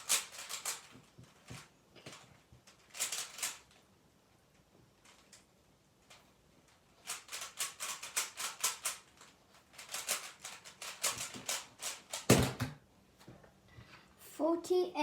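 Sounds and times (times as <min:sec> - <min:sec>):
puzzle cube plastic clicks: 0:00.0 - 0:03.8, 0:06.1 - 0:12.3.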